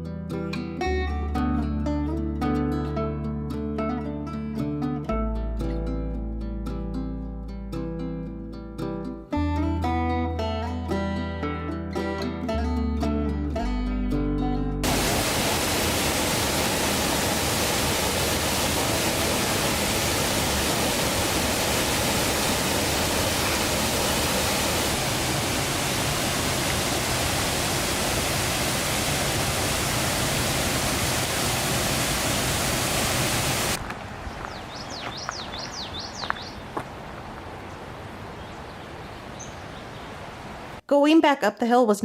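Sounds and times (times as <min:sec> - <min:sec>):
waterfall rushing: 0:14.8 - 0:34.4
bird chirps: 0:34.2 - 0:36.7, 0:38.4 - 0:40.2.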